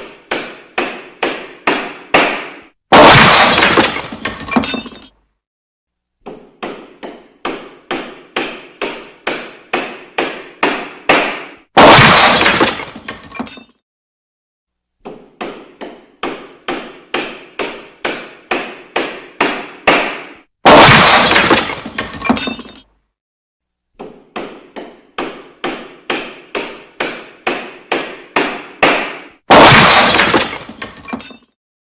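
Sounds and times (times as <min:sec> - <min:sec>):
glass breaking crash: 0:02.9 - 0:05.2, 0:11.8 - 0:13.8, 0:20.7 - 0:22.9, 0:29.5 - 0:31.6.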